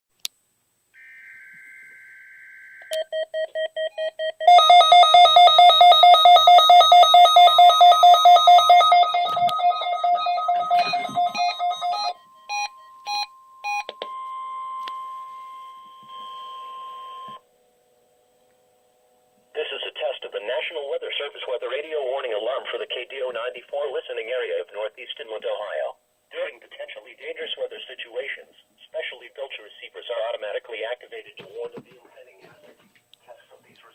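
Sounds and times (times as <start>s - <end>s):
rapid pulsed alert beeping: 1.0s - 17.4s
steady warning alarm tone: 1.0s - 17.5s.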